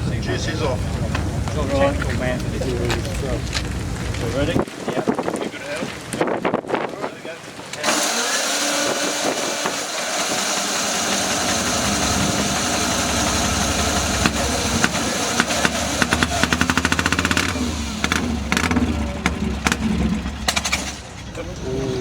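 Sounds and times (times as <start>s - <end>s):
motorcycle engine firing: 7.8s - 21.3s.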